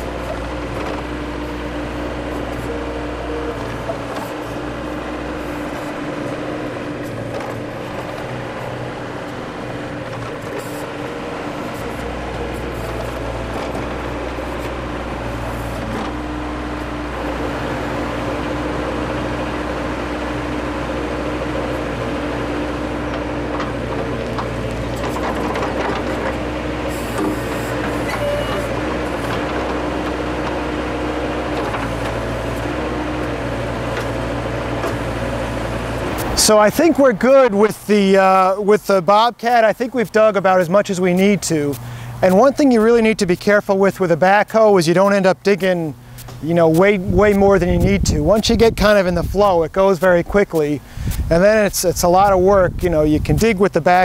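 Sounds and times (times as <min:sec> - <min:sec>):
diesel engine running: 0:00.0 - 0:54.0
hydraulics working: 0:00.0 - 0:54.0.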